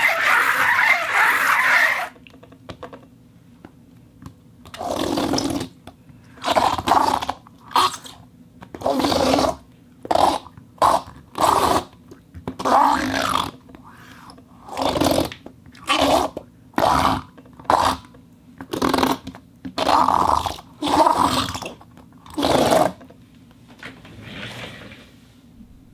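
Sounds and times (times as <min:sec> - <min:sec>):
rubber rubbing friction groans: 0:00.0 - 0:02.2.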